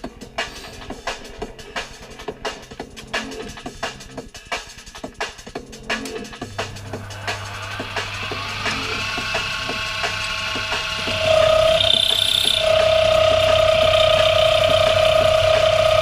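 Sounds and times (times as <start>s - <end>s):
milling machine running: 6.4s - 16.0s
steady machine whine: 6.4s - 16.0s.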